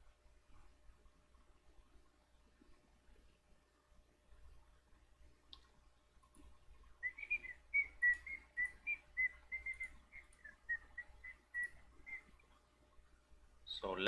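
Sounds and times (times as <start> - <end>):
whistling short high notes: 7.0 - 12.3.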